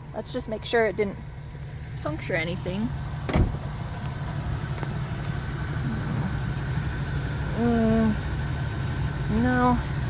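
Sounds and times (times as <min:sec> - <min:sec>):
car engine idling: 0:00.0 - 0:10.0
sharp thump: 0:03.3 - 0:03.6.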